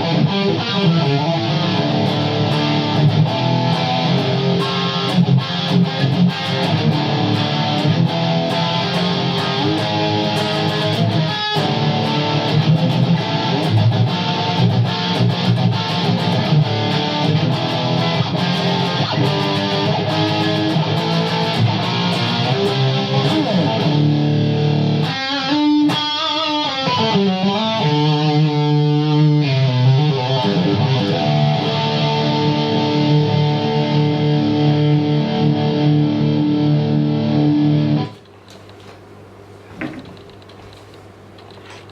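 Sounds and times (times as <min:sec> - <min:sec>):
distorted electric guitar riffs: 0:00.0 - 0:38.2.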